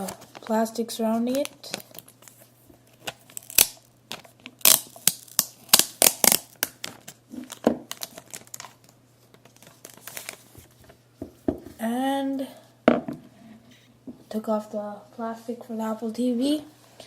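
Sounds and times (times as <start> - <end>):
plastic wrap crinkling: 0.0 - 11.0.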